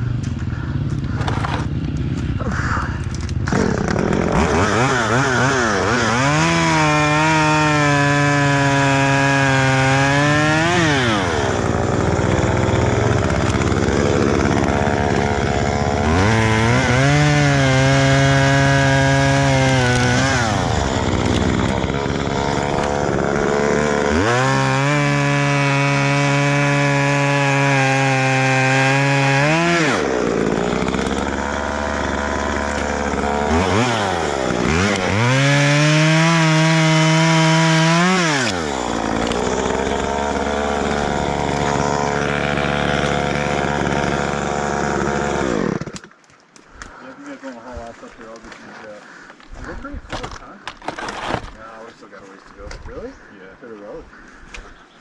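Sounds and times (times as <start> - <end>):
chainsaw cutting wood: 1.1 - 47.0, 48.4 - 51.8.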